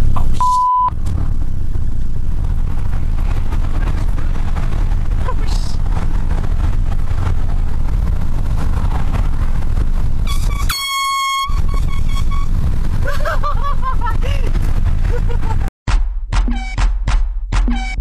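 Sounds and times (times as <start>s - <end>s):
low rumble: 0.0s - 16.8s
air horn blast: 10.2s - 12.6s.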